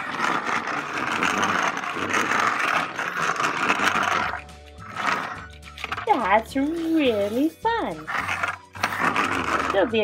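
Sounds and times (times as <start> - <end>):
toy truck rolling on hard surface: 0.0 - 10.0.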